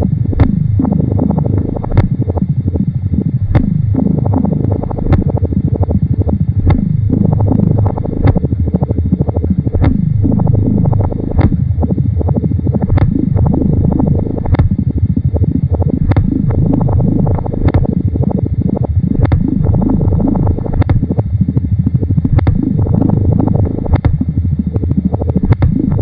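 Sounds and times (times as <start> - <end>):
low warbling electronic drone: 0.0 - 26.0
sharp clicks: 1.5 - 2.2, 3.4 - 5.4, 10.9 - 11.6, 14.3 - 14.8, 16.0 - 18.0, 19.2 - 26.0.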